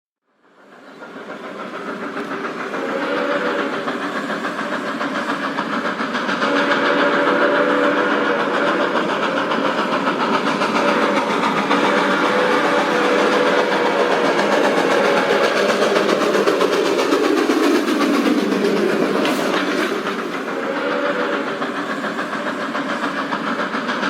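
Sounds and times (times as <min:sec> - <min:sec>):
steam locomotive chugging: 0:00.3 - 0:24.0
steam whistle blowing: 0:02.6 - 0:04.4, 0:06.3 - 0:16.2, 0:19.2 - 0:22.4.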